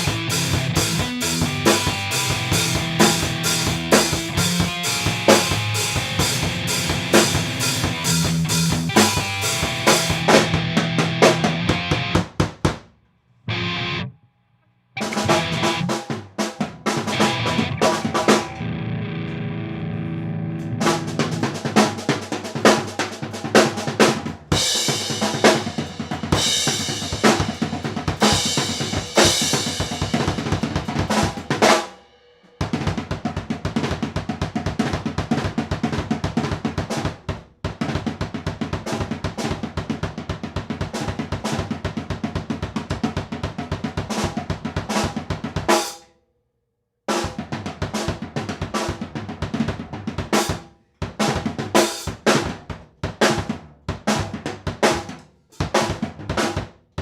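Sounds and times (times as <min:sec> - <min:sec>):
music with busy drum kit: 0:00.0 - 0:12.9, 0:15.0 - 0:19.4, 0:20.6 - 0:46.0, 0:47.1 - 0:57.0.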